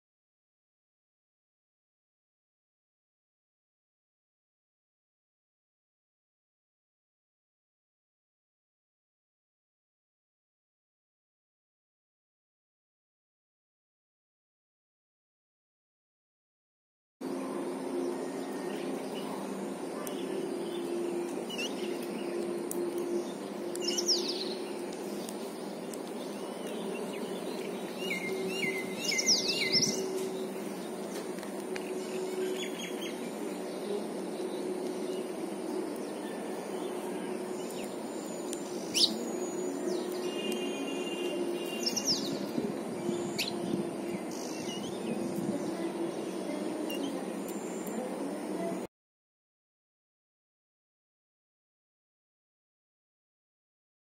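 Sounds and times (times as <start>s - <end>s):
faint high whine: 17.2s - 48.9s
steady low hum: 17.2s - 48.9s
birds chirping and squeaky calls: 17.4s - 48.8s.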